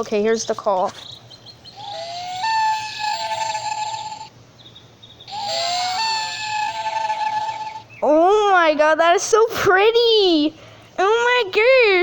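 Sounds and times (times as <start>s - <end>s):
recorded loon wail from toy speaker: 1.8s - 4.3s, 5.3s - 7.9s.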